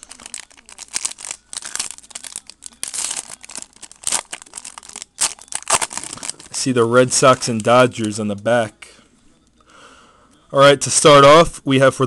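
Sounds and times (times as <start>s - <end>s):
plastic wrapping crinkling and tearing: 0.0s - 8.6s.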